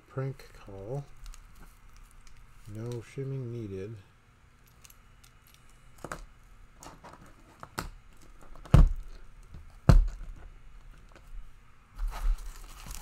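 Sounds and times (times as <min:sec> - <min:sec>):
packaging rustling: 0:12.0 - 0:13.0.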